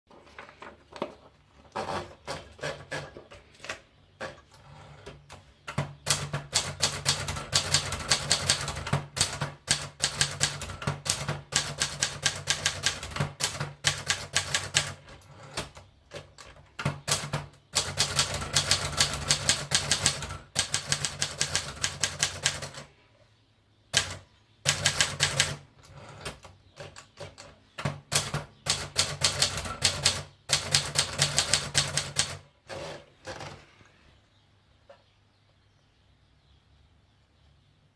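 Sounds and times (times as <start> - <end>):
manual typewriter clacking: 5.1 - 22.9, 24.0 - 33.5.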